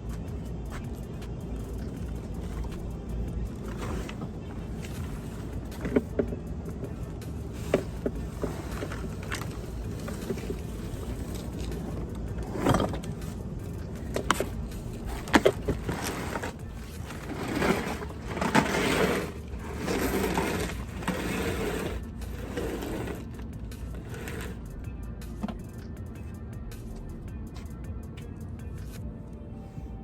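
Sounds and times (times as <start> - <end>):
cardboard box rustling and scraping: 1.6 - 24.7.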